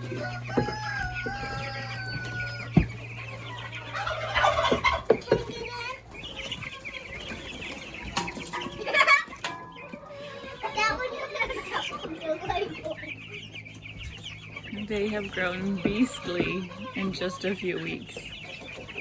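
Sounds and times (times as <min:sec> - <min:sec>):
steady low hum: 0:00.0 - 0:08.5
chickens clucking: 0:00.0 - 0:19.0.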